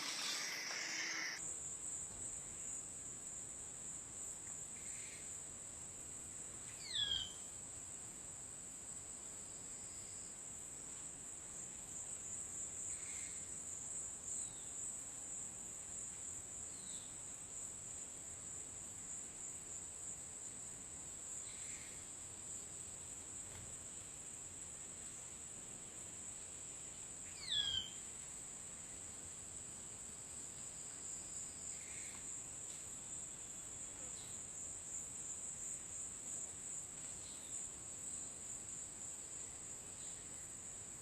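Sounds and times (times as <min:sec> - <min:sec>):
bird call sweeping down: 0:00.0 - 0:01.4
faint short bird calls: 0:00.0 - 0:01.4
insects chirping: 0:00.0 - 0:07.9, 0:11.5 - 0:41.0.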